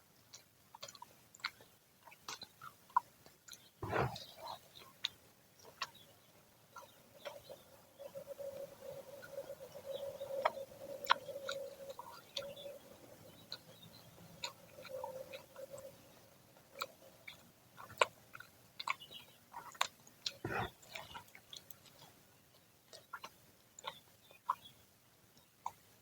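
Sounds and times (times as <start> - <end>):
chewing crunchy fried fritters: 0.0 - 8.3, 9.2 - 26.0
faint steady hum: 0.0 - 26.0
mouth clicks: 0.8 - 6.0, 8.5 - 12.6, 16.7 - 22.1.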